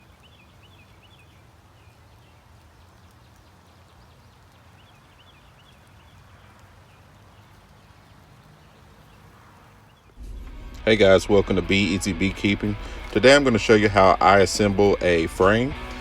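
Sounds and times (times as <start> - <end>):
faint bird chirping: 0.0 - 10.7
low steady hum: 8.2 - 16.0.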